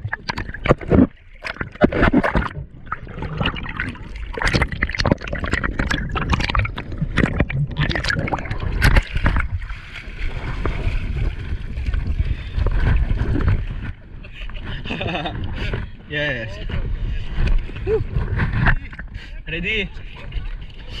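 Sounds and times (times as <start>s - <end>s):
low rumble: 0.0s - 14.2s
sea water splashing: 0.0s - 16.0s.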